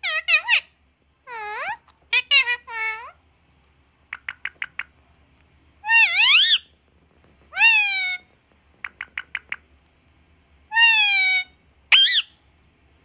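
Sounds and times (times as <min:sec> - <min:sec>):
parrot meow-like call: 0:05.8 - 0:06.6, 0:10.7 - 0:12.3.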